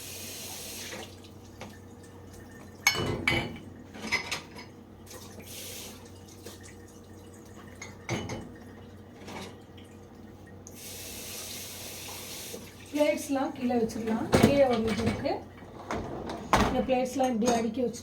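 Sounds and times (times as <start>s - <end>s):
cups clinking on dishwasher rack: 2.8s - 4.8s, 13.9s - 17.9s.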